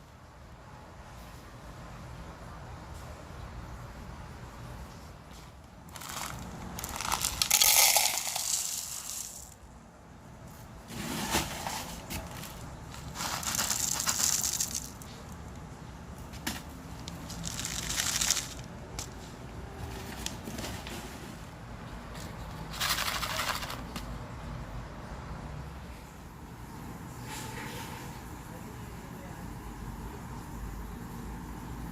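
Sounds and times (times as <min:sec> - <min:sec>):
low steady background noise: 0:00.0 - 0:31.9
rustling and crackling bursts: 0:04.9 - 0:09.6, 0:10.5 - 0:24.2.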